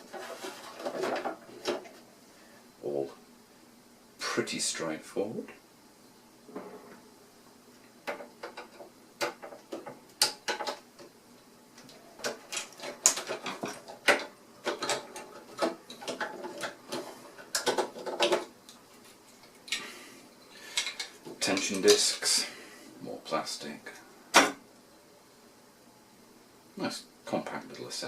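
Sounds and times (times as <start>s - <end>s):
small parts clicking and rattling: 11.8s - 19.8s, 20.7s - 21.7s.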